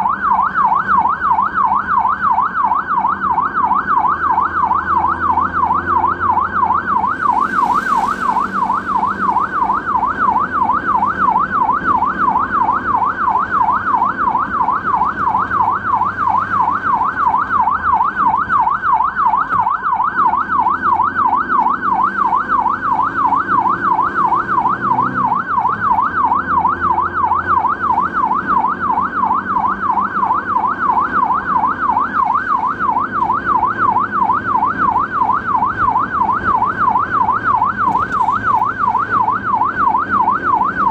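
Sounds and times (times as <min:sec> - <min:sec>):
ambulance siren yelping: 0:00.0 - 0:40.9.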